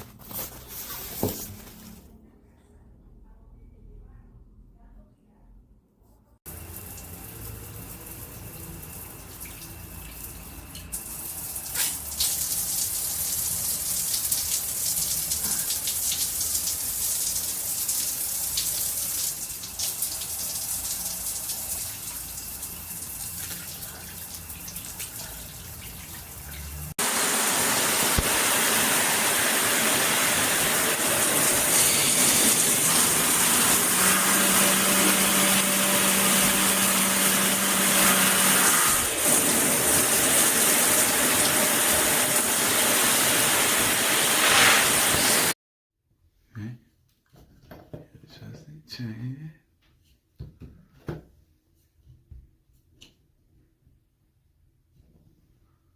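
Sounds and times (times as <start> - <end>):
shower water spraying: 6.5 - 45.6.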